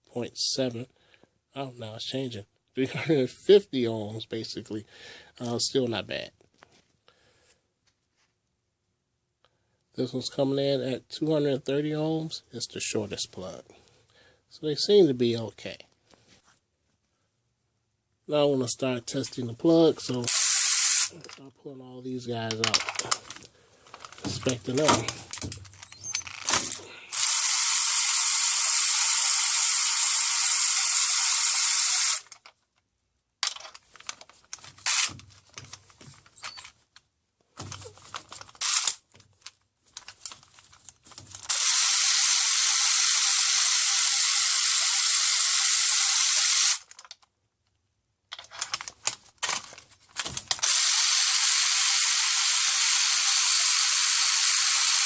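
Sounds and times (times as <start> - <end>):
ratchet wrench clicking: 20.3 - 21.4, 24.4 - 32.4, 34.8 - 35.2, 38.3 - 39.0, 41.5 - 47.0, 50.4 - 55.0.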